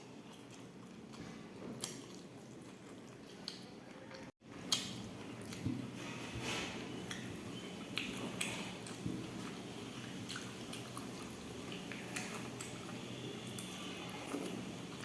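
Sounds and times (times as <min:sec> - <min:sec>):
person chewing: 0:00.0 - 0:15.0.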